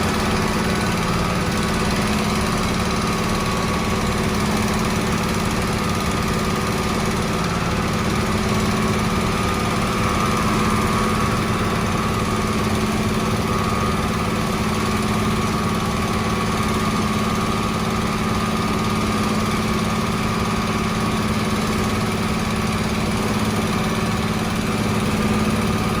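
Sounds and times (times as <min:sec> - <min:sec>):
construction machinery engine humming: 0:00.0 - 0:26.0.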